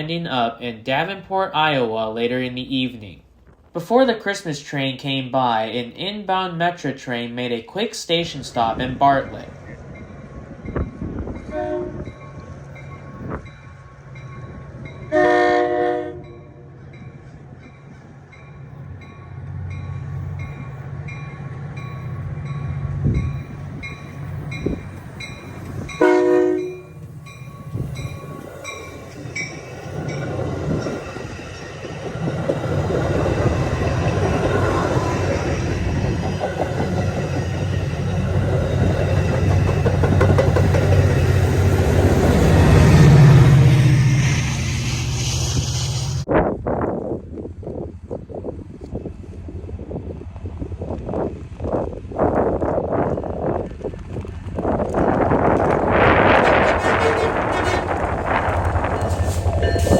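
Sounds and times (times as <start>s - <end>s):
train rumble and clatter: 0.0s - 59.9s
train horn blasts: 11.4s - 12.2s, 15.1s - 16.7s, 26.0s - 27.0s, 56.3s - 58.2s
train bell dinging: 16.2s - 31.9s, 58.9s - 59.9s.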